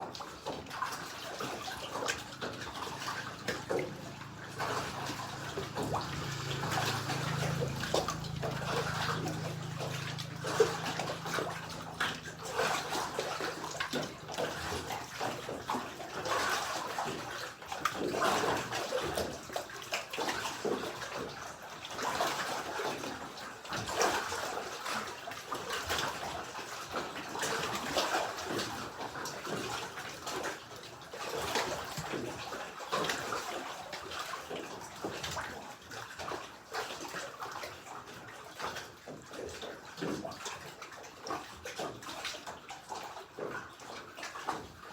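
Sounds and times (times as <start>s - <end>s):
water lapping and sloshing: 0.0s - 44.9s
low steady hum: 2.2s - 15.9s.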